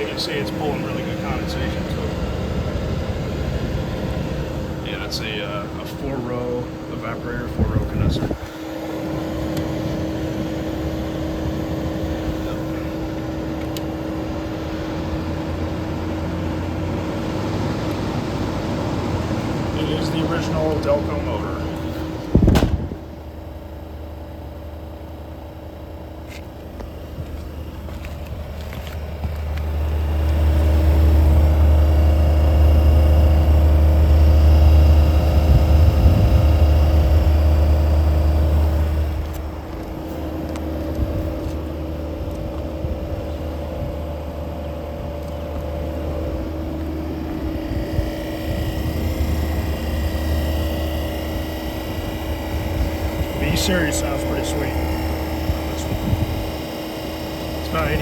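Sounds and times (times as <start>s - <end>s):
air conditioner humming: 0.0s - 58.0s.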